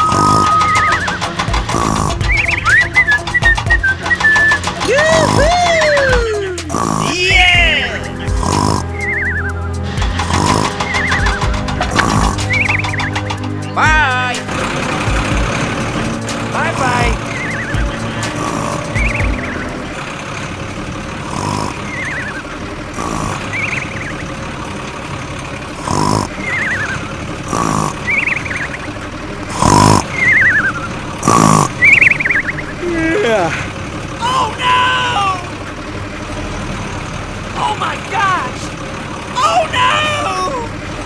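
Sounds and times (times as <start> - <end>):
horse whinnying: 0.0 - 13.4, 25.7 - 33.6
warbling chirps: 0.0 - 33.4
background music with low drone: 0.0 - 41.0
steady engine hum: 0.0 - 41.0.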